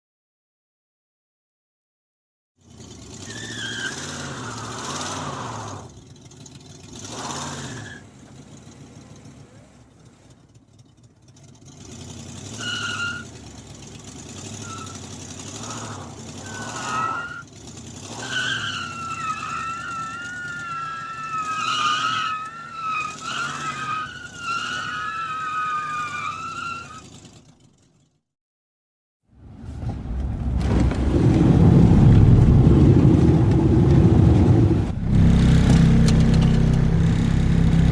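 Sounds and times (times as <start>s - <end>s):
car engine running: 2.6s - 28.2s, 29.4s - 37.9s
car tyres squealing: 2.7s - 27.7s, 29.4s - 37.9s.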